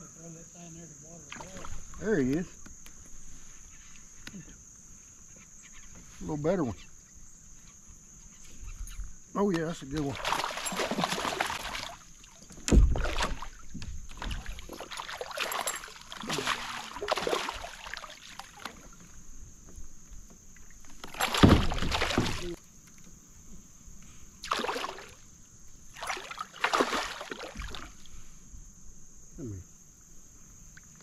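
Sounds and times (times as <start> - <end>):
water splashing: 9.6 - 19.2, 20.6 - 22.6, 24.4 - 25.2, 25.9 - 28.1
knocks and rustles on kayak: 12.4 - 17.7, 18.5 - 23.7
sharp bump on kayak: 12.6 - 13.4, 21.2 - 22.6.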